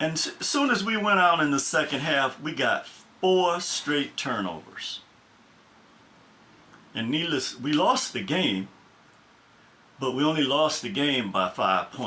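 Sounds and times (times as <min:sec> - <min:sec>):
man speaking: 0:00.0 - 0:05.1, 0:06.9 - 0:08.8, 0:10.0 - 0:12.0
faint room hiss: 0:00.0 - 0:12.0.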